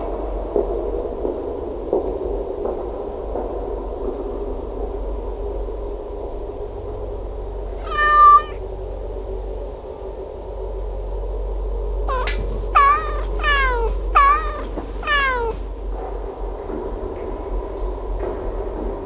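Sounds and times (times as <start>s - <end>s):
steady low hum: 0.0s - 19.0s
cat meowing: 7.8s - 8.6s, 12.1s - 15.6s.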